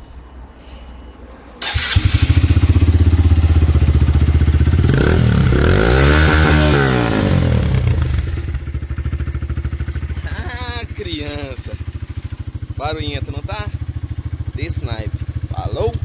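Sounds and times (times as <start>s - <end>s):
motorcycle engine idling and revving: 1.6s - 16.0s.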